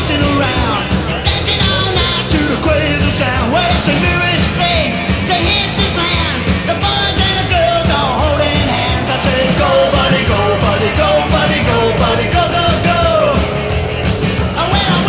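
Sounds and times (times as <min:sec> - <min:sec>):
loud rock and roll music with singing: 0:00.0 - 0:15.0.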